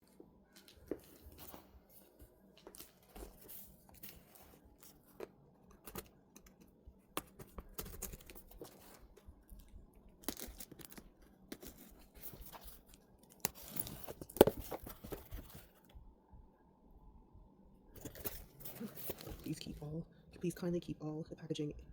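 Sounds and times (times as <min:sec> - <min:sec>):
packaging rustling: 0:00.5 - 0:06.2, 0:07.2 - 0:15.9, 0:18.0 - 0:19.8
packaging tearing: 0:10.2 - 0:15.4.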